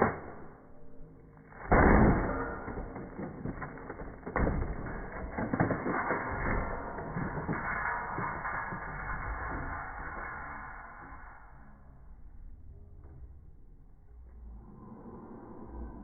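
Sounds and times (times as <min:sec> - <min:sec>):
pieces clattering and knocking: 0:01.5 - 0:09.7.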